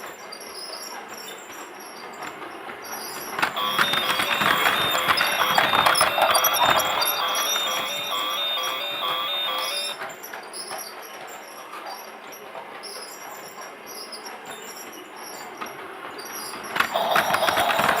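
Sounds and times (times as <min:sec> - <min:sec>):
toy train clicking and squeaking: 0:02.9 - 0:10.0, 0:16.2 - 0:18.0
toy train electronic tune: 0:03.5 - 0:10.0, 0:16.9 - 0:18.0.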